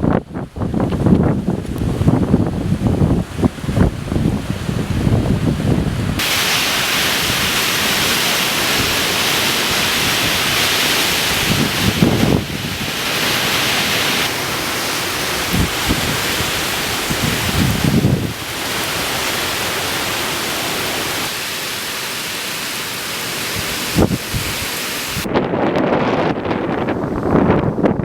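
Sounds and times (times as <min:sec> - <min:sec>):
wind gusts buffeting microphone: 0:00.0 - 0:21.4, 0:23.4 - 0:28.0
wind and rain rushing hiss: 0:00.0 - 0:28.0.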